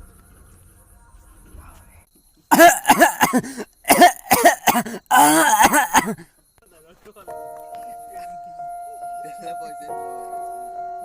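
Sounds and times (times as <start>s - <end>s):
person coughing: 2.5s - 6.3s.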